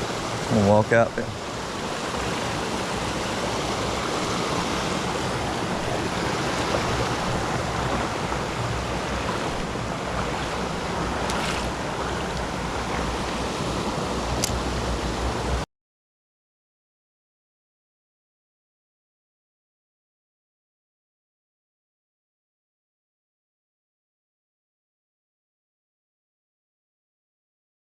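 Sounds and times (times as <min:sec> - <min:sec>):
rushing creek water: 0:00.0 - 0:15.6
wind buffeting microphone: 0:00.0 - 0:15.6.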